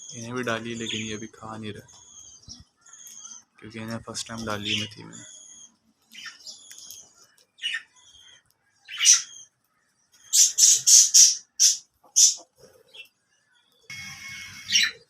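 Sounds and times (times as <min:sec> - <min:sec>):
parakeets chirping: 0:00.0 - 0:07.9, 0:08.9 - 0:09.5, 0:10.2 - 0:13.0, 0:14.0 - 0:15.0
parakeets squawking harshly: 0:08.9 - 0:09.3, 0:10.3 - 0:12.4, 0:14.7 - 0:15.0.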